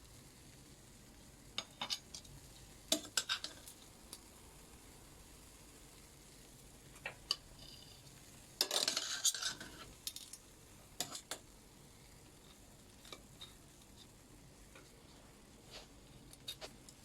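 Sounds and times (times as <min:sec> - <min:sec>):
pancakes sizzling: 0:00.0 - 0:17.0
utensil scraping a frying pan: 0:02.9 - 0:03.7, 0:07.3 - 0:10.0, 0:11.0 - 0:11.4, 0:15.6 - 0:16.8.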